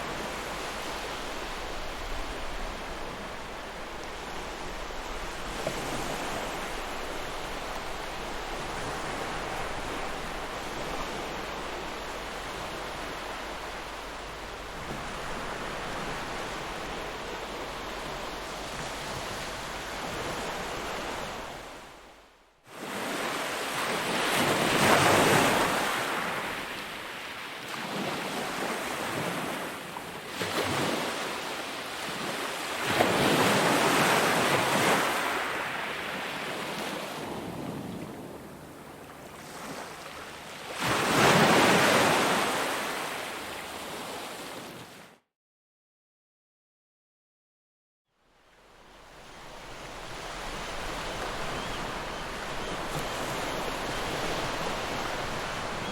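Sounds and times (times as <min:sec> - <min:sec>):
ocean waves washing in: 0:00.0 - 0:29.4, 0:48.5 - 0:55.9.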